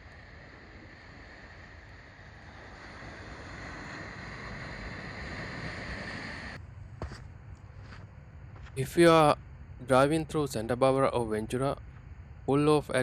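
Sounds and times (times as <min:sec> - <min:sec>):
surf: 0:00.0 - 0:06.6
wind noise on microphone: 0:00.0 - 0:06.6.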